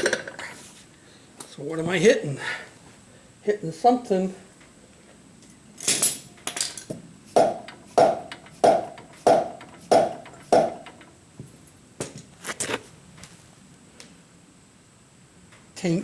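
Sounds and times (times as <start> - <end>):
knocks striking a wheel onto hub: 7.4 - 12.2.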